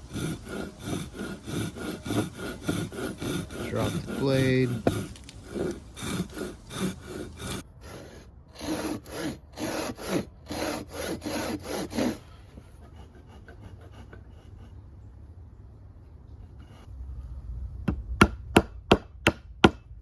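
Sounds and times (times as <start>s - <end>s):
hand saw cutting wood: 0.0s - 14.6s.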